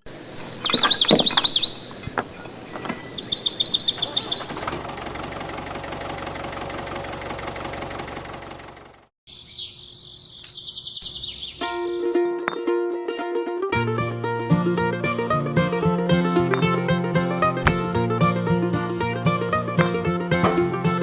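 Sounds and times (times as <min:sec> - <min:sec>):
bird trilling: 0:00.1 - 0:04.6, 0:09.3 - 0:11.9
small engine running: 0:03.8 - 0:09.1.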